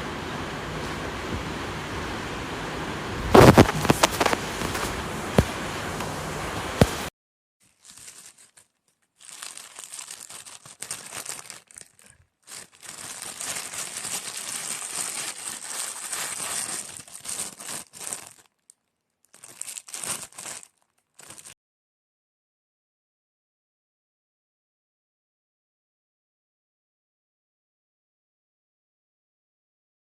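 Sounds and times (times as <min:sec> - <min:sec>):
plastic packaging crinkling: 0:03.4 - 0:05.0, 0:07.6 - 0:21.6.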